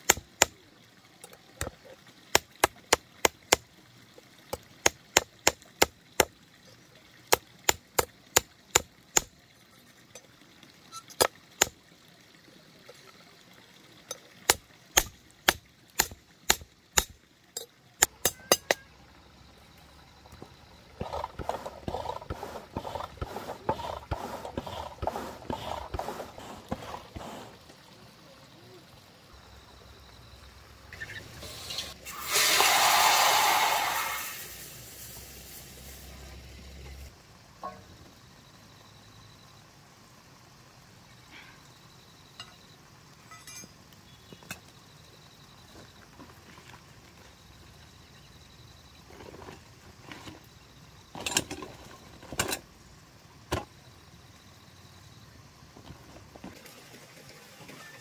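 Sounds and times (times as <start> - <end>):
rough noisy sound: 20.2 - 27.8.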